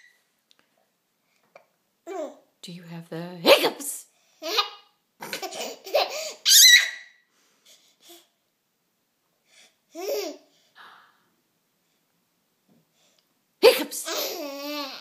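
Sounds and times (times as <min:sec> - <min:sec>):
toddler laughing and babbling: 0:01.6 - 0:02.5, 0:04.4 - 0:07.0, 0:09.9 - 0:10.5, 0:14.0 - 0:15.0.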